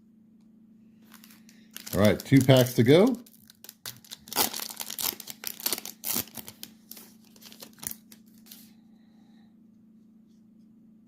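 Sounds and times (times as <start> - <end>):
foil wrapper crinkling: 1.0 - 8.8.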